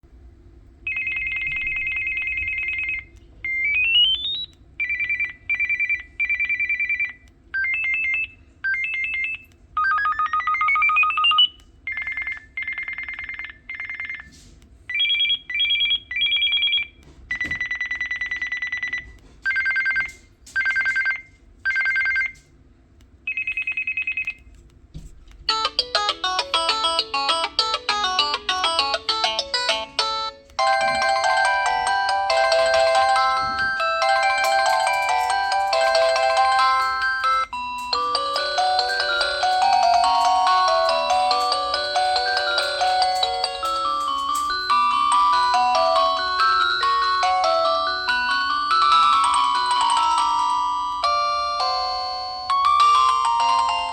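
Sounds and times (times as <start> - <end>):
electronic ringtone beeps: 25.5 - 53.9
melodic ringtone tune: 25.5 - 53.9.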